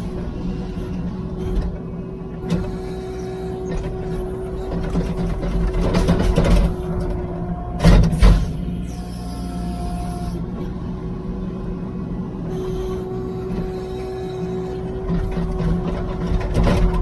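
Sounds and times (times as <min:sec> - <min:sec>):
diesel engine running: 0:00.0 - 0:17.0
loud clunks: 0:07.8 - 0:08.7.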